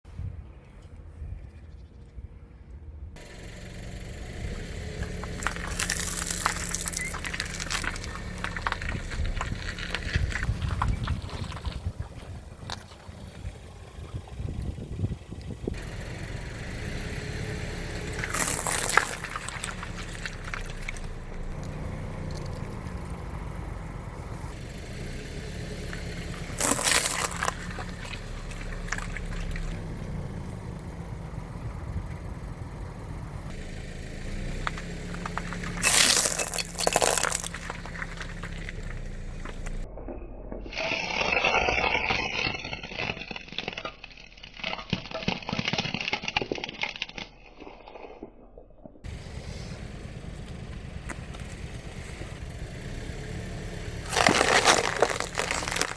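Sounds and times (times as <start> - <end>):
tyres crushing ornaments: 3.2 - 13.7, 15.7 - 39.9, 40.6 - 49.2, 53.6 - 55.9
car engine running low: 3.2 - 39.9, 49.0 - 55.9
crackling and scraping: 3.2 - 55.9.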